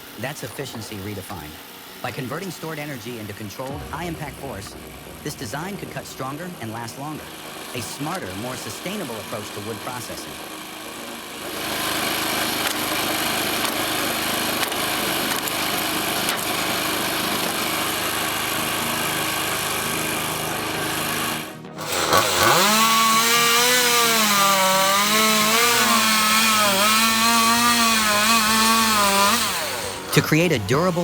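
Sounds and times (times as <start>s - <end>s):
steady machine noise: 0.0s - 31.0s
small engine revving: 7.3s - 31.0s.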